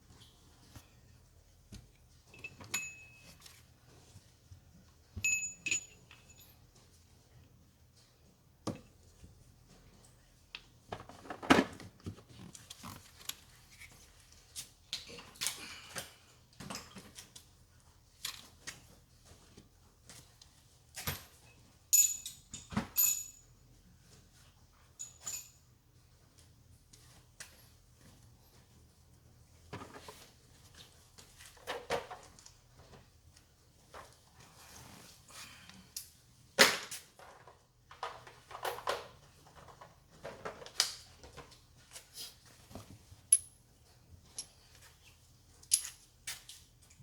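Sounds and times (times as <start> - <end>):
metallic clinks of hand tools: 5.2 - 6.6, 21.9 - 23.5, 25.0 - 25.6.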